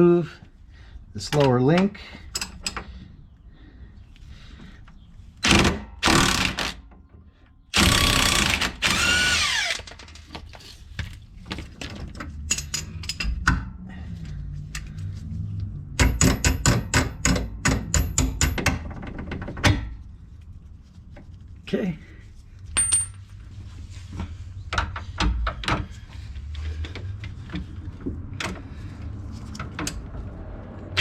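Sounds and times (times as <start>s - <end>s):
sharp metallic clicks and knocks: 12.1s - 13.8s, 16.0s - 19.9s.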